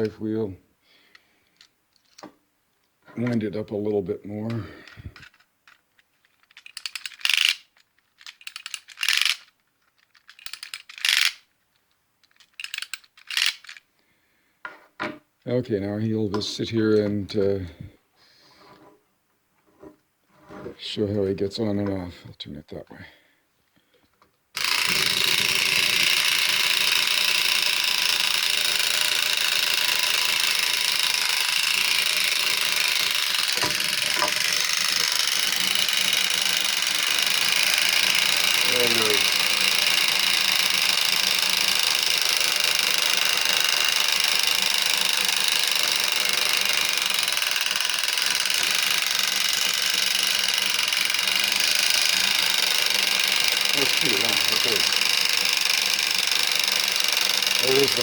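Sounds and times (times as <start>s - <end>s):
wind-up toy ratchet clicks: 4.4s - 13.9s, 24.6s - 58.0s.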